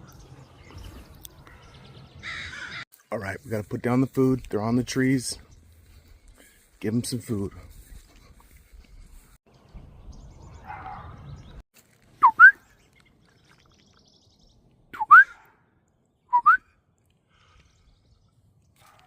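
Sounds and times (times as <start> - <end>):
person whistling two-note slur: 12.2 - 12.6, 15.0 - 15.4, 16.3 - 16.7.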